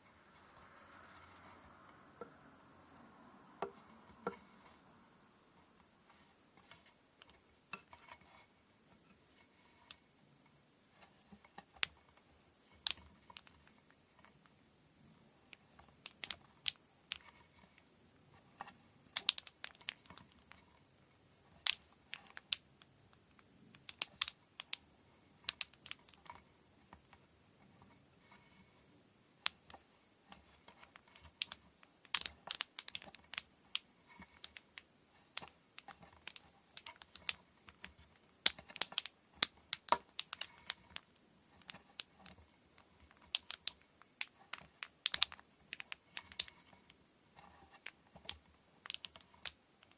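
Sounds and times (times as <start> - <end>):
light clicks and taps of tools: 29.4 - 49.9.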